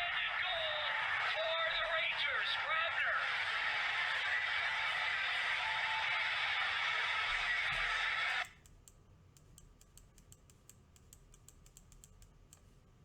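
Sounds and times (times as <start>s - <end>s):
typing on computer keyboard: 8.4s - 12.4s.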